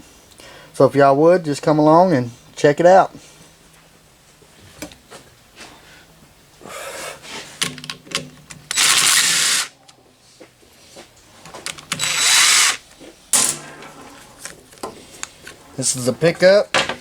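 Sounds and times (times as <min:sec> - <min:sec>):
tool and parts clicking: 0:07.6 - 0:09.7, 0:11.5 - 0:12.8
power drill spinning bolts: 0:07.7 - 0:09.7, 0:11.6 - 0:12.8.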